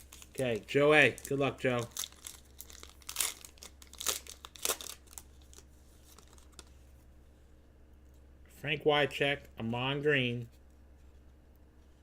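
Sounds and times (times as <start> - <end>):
card pack wrapper tearing: 0.0 - 6.6.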